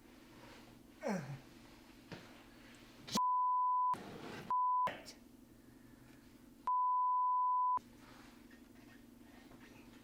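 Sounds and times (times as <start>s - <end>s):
censor bleeps: 3.2s - 4.9s, 6.7s - 7.8s.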